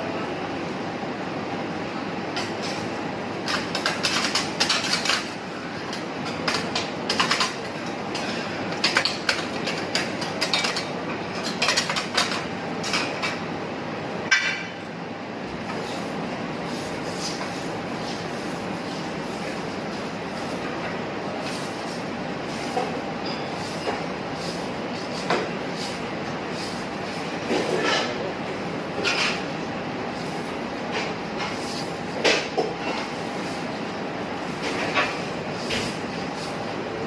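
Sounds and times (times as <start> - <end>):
metal spatulas clattering on griddle: 6.3 - 13.4.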